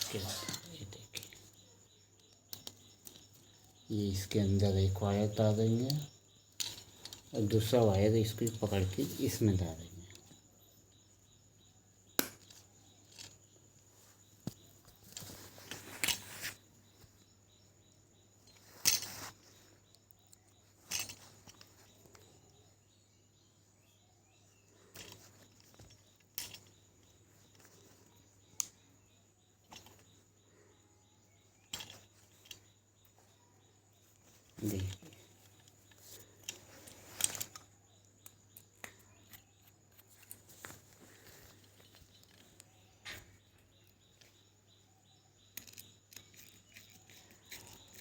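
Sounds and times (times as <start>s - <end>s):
hands working wires clicking: 2.2s - 10.4s, 12.1s - 16.6s, 18.4s - 22.4s, 24.9s - 28.8s, 34.2s - 43.2s.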